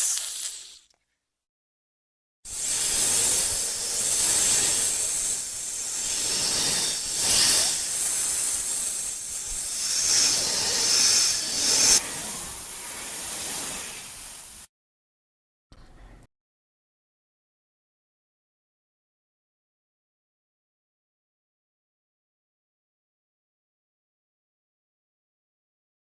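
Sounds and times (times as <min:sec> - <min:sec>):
snake hissing: 0:00.0 - 0:00.9, 0:02.5 - 0:14.7.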